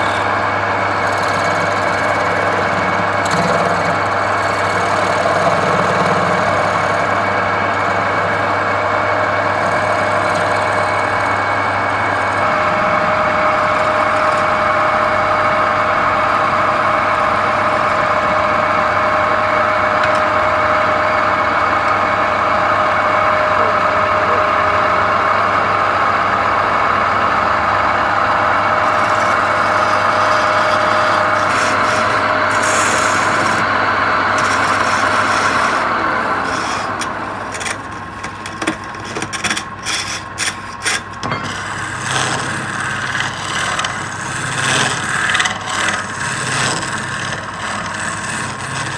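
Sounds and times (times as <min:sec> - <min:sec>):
woodturning lathe motor hum: 0:00.0 - 0:48.9
rough scraping noise: 0:28.6 - 0:48.9.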